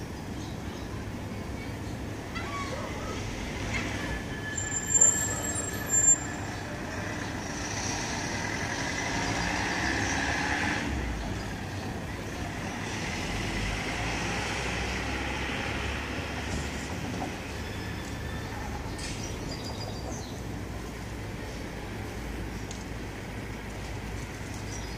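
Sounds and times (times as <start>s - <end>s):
city traffic: 0.0s - 24.9s
high-pitched squeals: 3.8s - 6.8s.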